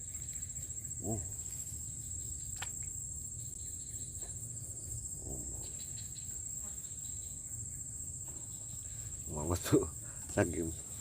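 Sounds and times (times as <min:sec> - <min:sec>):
crickets chirring: 0:00.0 - 0:11.0.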